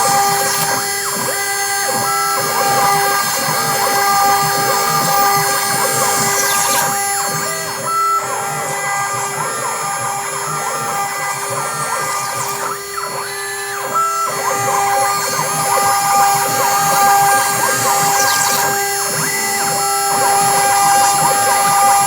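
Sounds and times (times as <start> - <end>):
stepper motors whirring: 0.0 - 22.0
spindle whine: 2.6 - 9.2, 10.9 - 22.0.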